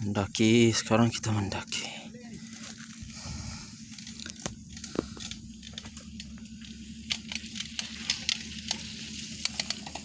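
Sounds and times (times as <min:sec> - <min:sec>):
bike tyres crackling over gravel: 0:02.4 - 0:10.0
sharp clicks and ticks: 0:09.4 - 0:10.0.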